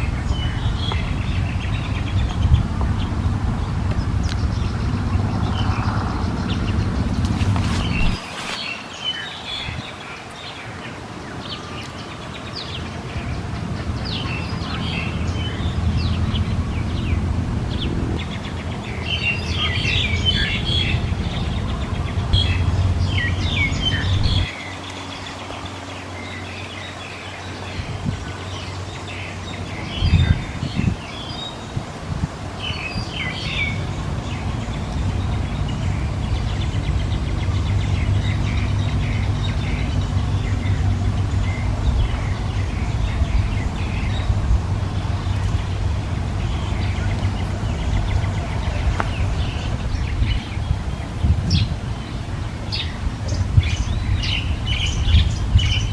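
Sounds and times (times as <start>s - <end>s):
low background rumble: 0.0s - 8.2s, 12.7s - 31.1s, 31.7s - 55.9s
bird chirping and calling: 17.8s - 25.1s.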